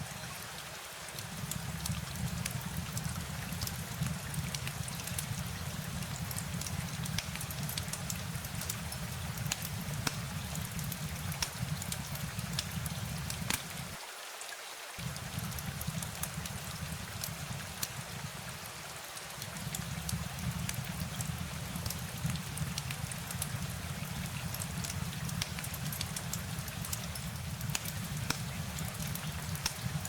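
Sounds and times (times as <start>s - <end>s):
steady rain: 0.0s - 30.0s.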